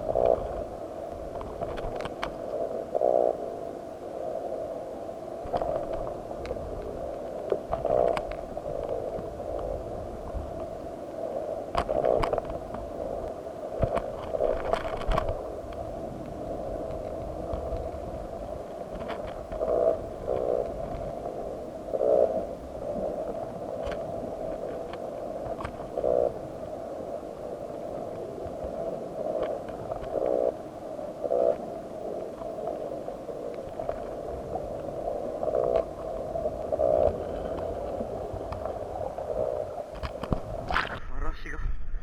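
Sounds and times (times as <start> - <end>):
muffled underwater hum: 0.0 - 42.0
faint clicks: 0.1 - 3.1, 5.4 - 10.9, 11.7 - 18.1, 18.7 - 21.1, 23.8 - 26.4, 28.1 - 30.6, 31.2 - 41.0.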